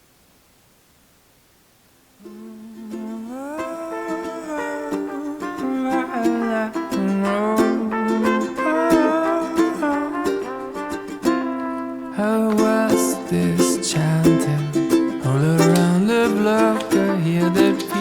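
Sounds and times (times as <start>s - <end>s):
ukulele song: 2.2s - 18.0s.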